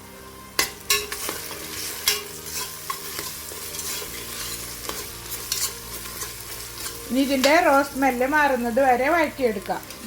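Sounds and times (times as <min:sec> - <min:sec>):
onions sizzling in hot oil: 0:00.0 - 0:10.0
spoon stirring: 0:00.7 - 0:07.9.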